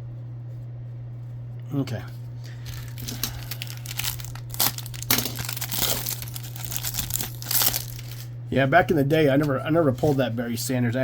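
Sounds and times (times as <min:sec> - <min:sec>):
steady low hum: 0:00.0 - 0:11.0
card pack wrapper crinkling and tearing: 0:02.5 - 0:08.3.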